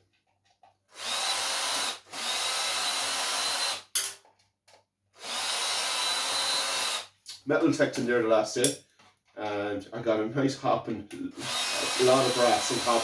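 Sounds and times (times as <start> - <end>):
cordless drill whining: 0.9 - 3.9, 5.2 - 7.1, 11.3 - 13.0
drill click: 11.4 - 13.0.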